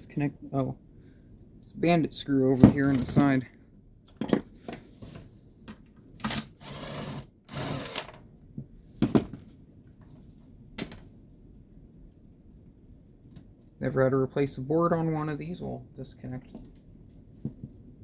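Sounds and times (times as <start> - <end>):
clicks and knocks of parts handled: 2.6 - 3.4
small power driver running: 6.3 - 8.1.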